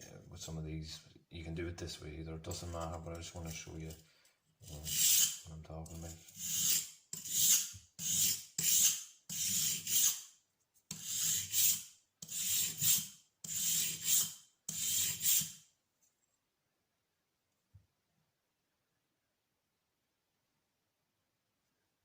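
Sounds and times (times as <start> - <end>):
blade rasping on sharpening stone: 4.6 - 5.4, 6.1 - 10.3, 10.9 - 15.6.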